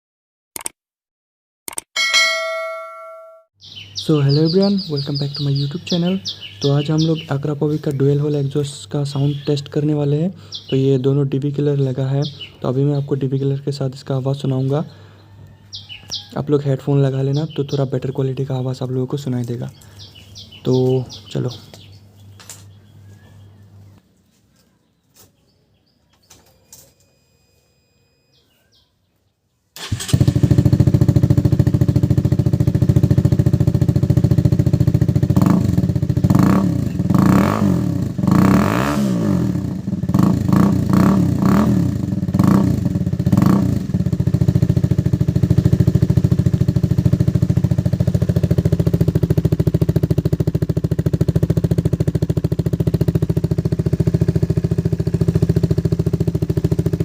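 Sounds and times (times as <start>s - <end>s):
motorcycle engine idling: 3.7s - 9.8s, 14.4s - 24.0s, 29.9s - 38.5s, 39.6s - 57.0s
motorcycle throttle blips: 29.9s - 57.0s.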